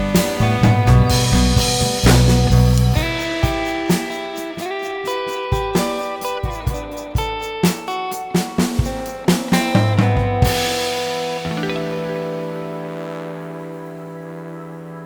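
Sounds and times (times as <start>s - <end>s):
sharp drum hits: 0.0s - 4.4s
guitar bass and drums music: 0.0s - 14.8s.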